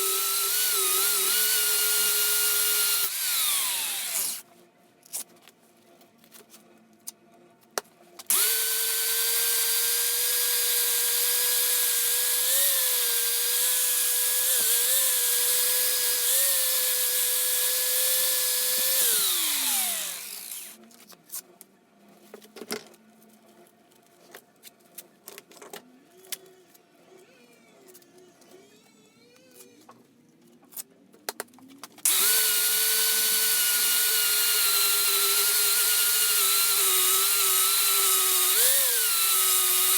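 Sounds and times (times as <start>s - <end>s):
electric power tool running: 0.0s - 4.4s, 8.3s - 20.8s, 32.1s - 39.9s.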